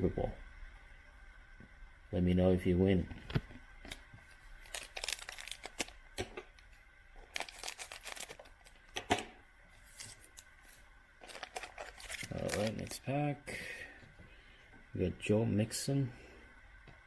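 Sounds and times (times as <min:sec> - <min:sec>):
foil wrapper crinkling and tearing: 0:03.9 - 0:06.3, 0:07.2 - 0:08.9, 0:09.8 - 0:13.1.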